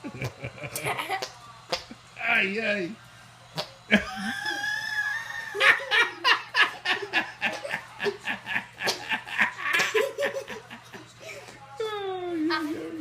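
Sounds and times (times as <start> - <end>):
high-pitched laughing: 3.9 - 10.7.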